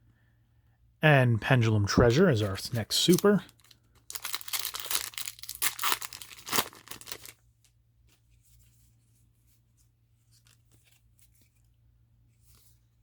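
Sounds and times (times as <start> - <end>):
cards being handled: 2.4 - 7.4
foil wrapper tearing and crinkling: 2.7 - 7.4.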